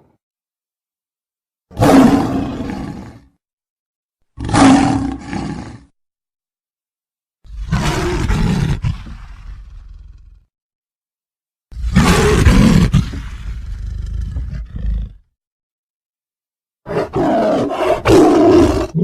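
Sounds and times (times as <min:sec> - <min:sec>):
cartoon monster roars: 0:01.7 - 0:03.4, 0:07.5 - 0:10.5, 0:11.8 - 0:15.3, 0:16.9 - 0:19.0.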